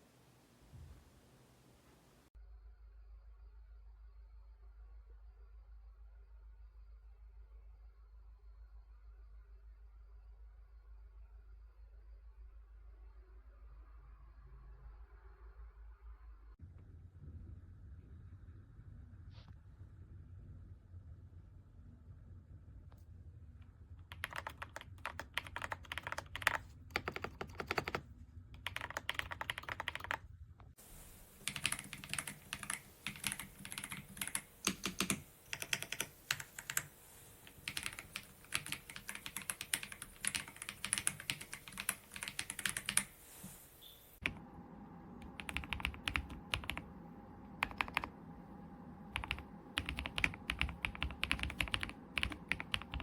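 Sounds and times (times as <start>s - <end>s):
mechanical keyboard typing: 24.1s - 28.0s, 28.6s - 30.2s, 31.4s - 36.9s, 37.5s - 43.1s, 45.2s - 46.9s, 47.6s - 48.1s, 49.1s - 53.0s.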